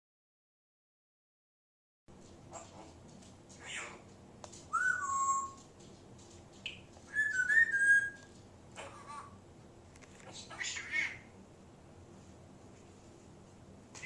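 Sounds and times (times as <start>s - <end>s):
parrot whistling: 4.7s - 5.6s, 6.7s - 9.3s.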